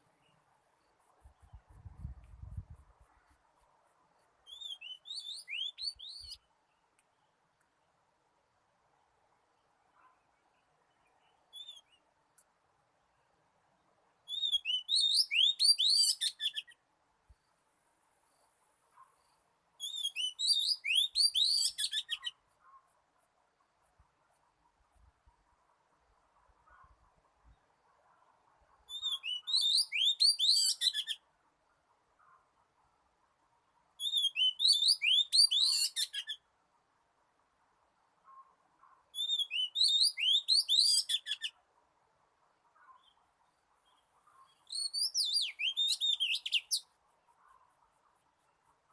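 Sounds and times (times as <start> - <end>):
magpie-robin singing: 4.4 - 6.4, 11.5 - 12.0, 14.3 - 16.8, 19.8 - 22.8, 28.9 - 31.2, 34.0 - 36.4, 39.1 - 41.6, 43.9 - 47.0.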